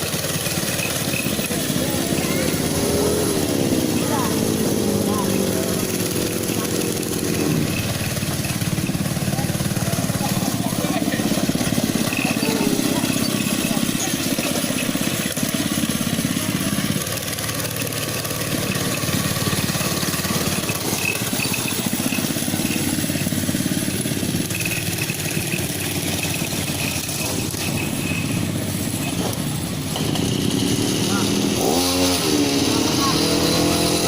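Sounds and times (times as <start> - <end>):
quad bike engine running: 0.0 - 34.0.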